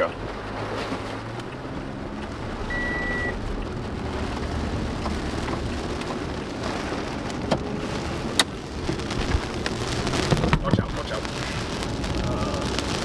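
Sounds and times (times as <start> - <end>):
heavy rain drumming on vehicle: 0.0 - 13.0
road and engine rumble: 0.0 - 13.0
short high beep: 2.7 - 3.3.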